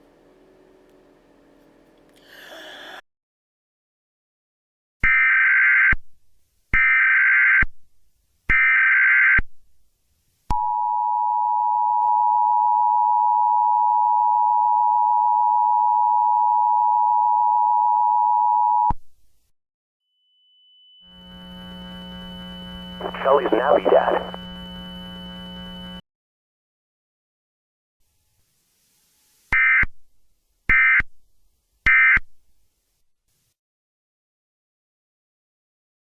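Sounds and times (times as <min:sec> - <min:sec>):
buzzy digital data bursts: 0:23.0 - 0:24.4
noise burst: 0:23.0 - 0:24.4.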